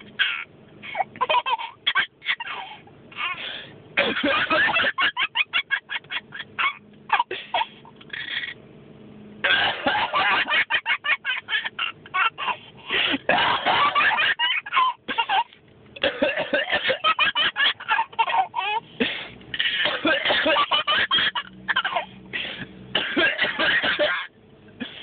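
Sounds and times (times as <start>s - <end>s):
baby laughing: 0.0s - 3.4s, 4.1s - 8.6s, 10.0s - 12.6s, 13.2s - 15.6s, 16.7s - 18.8s, 19.6s - 22.2s
adult coughing: 4.0s - 4.9s, 9.4s - 10.5s, 12.9s - 14.4s, 16.0s - 17.1s, 19.0s - 25.0s.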